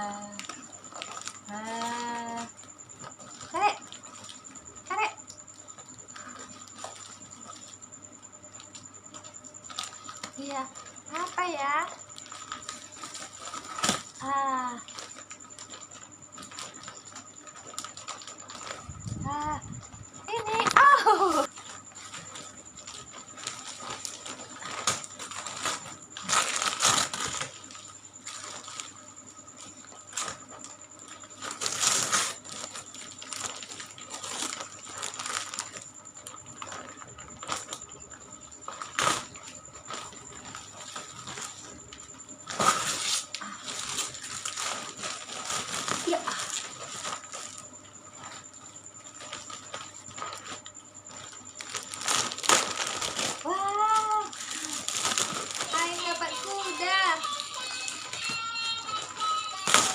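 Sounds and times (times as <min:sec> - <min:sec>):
gift packaging rustling: 0:00.1 - 0:04.9, 0:05.6 - 0:07.8, 0:08.5 - 0:19.6, 0:20.3 - 0:59.9
gift packaging being torn: 0:23.3 - 0:28.9, 0:31.4 - 0:35.8, 0:38.7 - 0:39.3, 0:42.5 - 0:47.6, 0:49.2 - 0:59.9.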